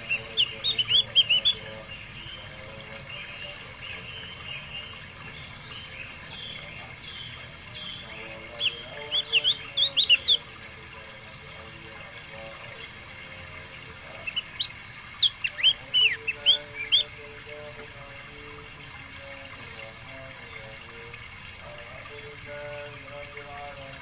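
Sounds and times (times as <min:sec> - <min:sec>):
songbird chirping: 0:00.0 - 0:24.0.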